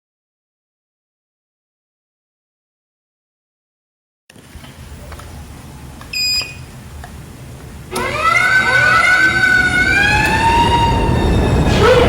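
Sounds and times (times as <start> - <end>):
fire alarm siren: 7.9 - 12.0.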